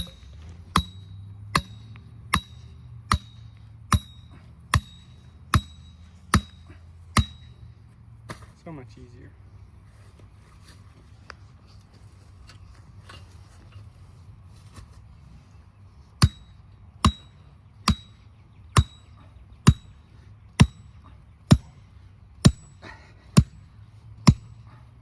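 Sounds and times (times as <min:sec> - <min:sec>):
hammer striking metal post: 0:00.0 - 0:07.7, 0:16.2 - 0:18.2, 0:18.8 - 0:20.0, 0:20.6 - 0:20.9, 0:21.5 - 0:21.8, 0:22.4 - 0:22.8, 0:23.4 - 0:23.6, 0:24.2 - 0:24.6.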